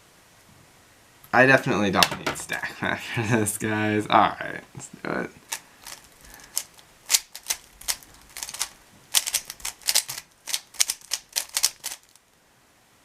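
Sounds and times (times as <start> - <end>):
puzzle cube clicking: 5.5 - 12.2.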